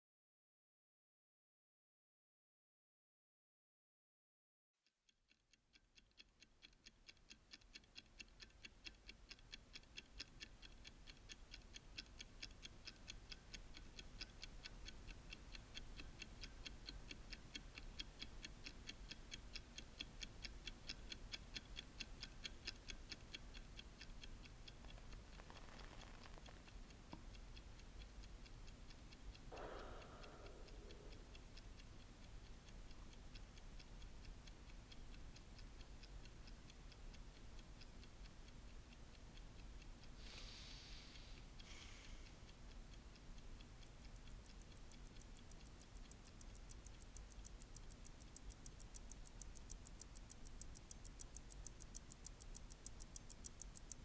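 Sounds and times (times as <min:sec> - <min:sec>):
mechanical watch ticking: 0:05.0 - 0:54.0.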